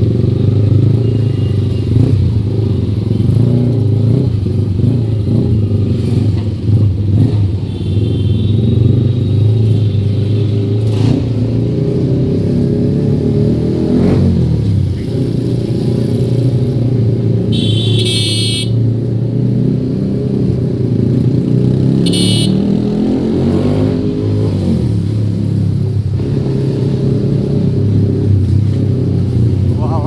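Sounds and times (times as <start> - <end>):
motorcycle engine in traffic: 0.0 - 30.0
high-pitched horn: 17.5 - 18.8, 22.0 - 22.6.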